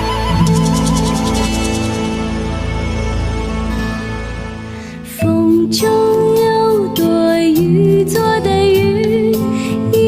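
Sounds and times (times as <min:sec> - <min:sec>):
pop ballad sustained chords: 0:00.0 - 0:10.0
shimmering high tremolo: 0:00.3 - 0:03.7.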